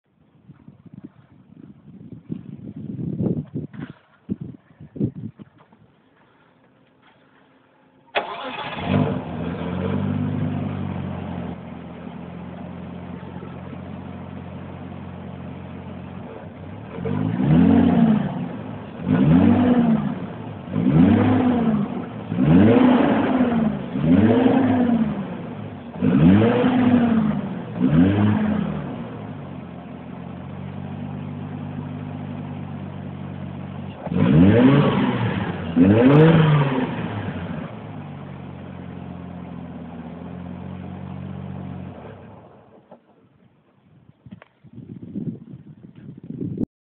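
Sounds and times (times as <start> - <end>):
car engine starting and idling: 3.6 - 46.3
engine revving: 8.1 - 42.5.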